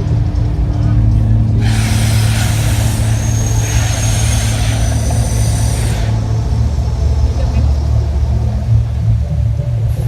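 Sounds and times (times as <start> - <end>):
deep steady rumble: 0.0 - 10.0
loud hissing rush: 1.5 - 8.5.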